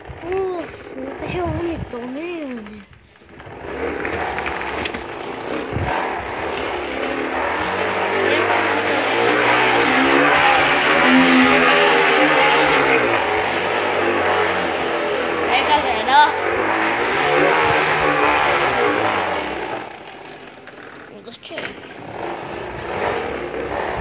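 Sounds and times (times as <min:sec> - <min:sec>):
wind noise: 0:00.0 - 0:06.8
bicycle noisemaker buzzing: 0:00.0 - 0:24.0.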